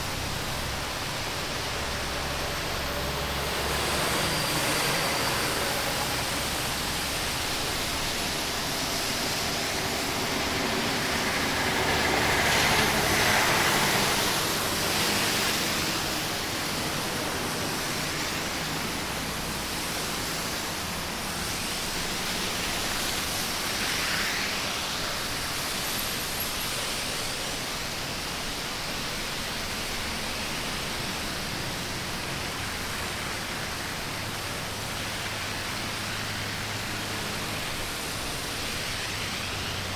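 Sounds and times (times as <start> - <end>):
tyres hissing on wet road: 0.0 - 39.9.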